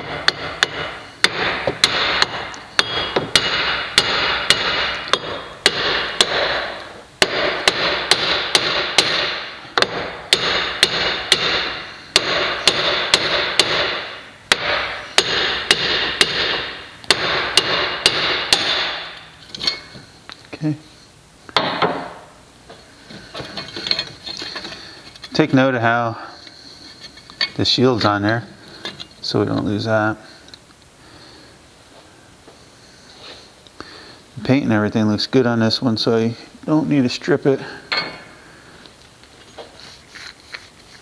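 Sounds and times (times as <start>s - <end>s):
hammer striking metal: 0.0s - 19.9s, 37.9s - 38.3s.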